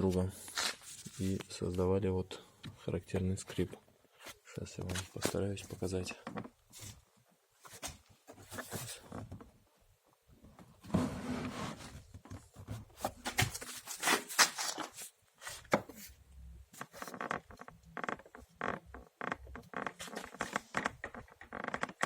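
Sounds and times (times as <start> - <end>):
plastic parts creaking: 16.8 - 22.0.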